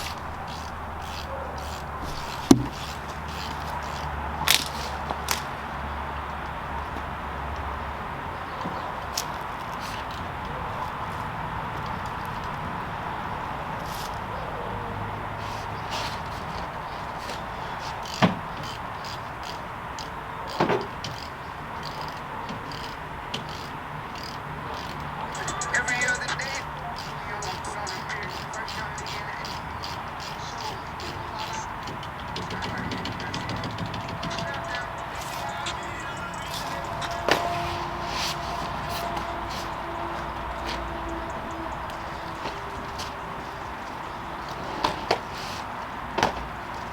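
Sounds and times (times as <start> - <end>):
steady low hum: 0.0 - 3.2
steady background noise: 0.0 - 46.9
sharp knock of tools: 2.2 - 2.8.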